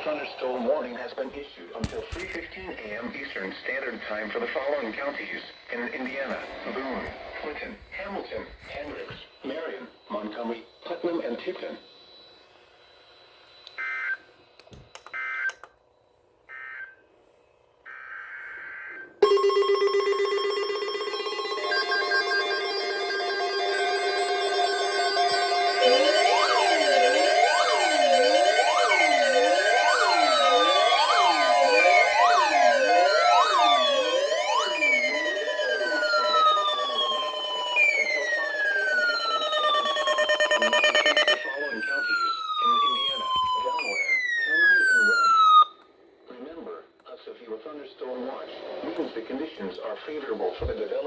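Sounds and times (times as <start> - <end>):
electronic emergency sirens: 17.9 - 45.9
loud steady alert tone: 19.2 - 45.7
digital data bursts: 20.1 - 45.6.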